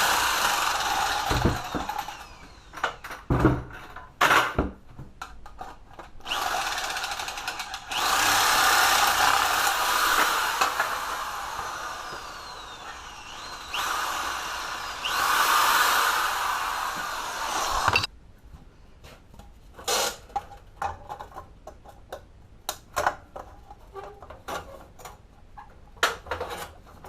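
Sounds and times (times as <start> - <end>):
handheld power tool running: 0.0 - 3.2, 6.3 - 18.1.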